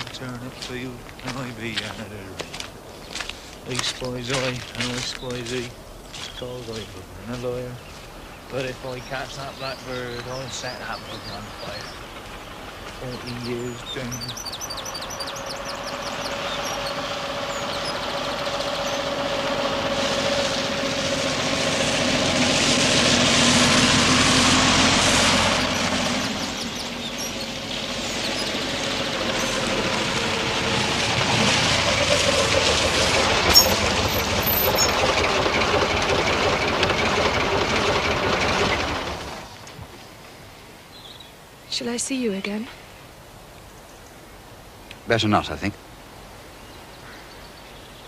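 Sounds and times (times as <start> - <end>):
train wagons rattling and rumbling: 8.7 - 39.5.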